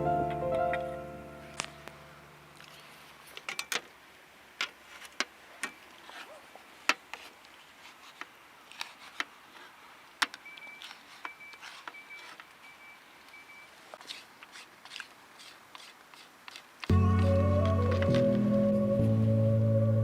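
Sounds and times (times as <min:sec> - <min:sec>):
objects being handled: 0:04.6 - 0:12.6.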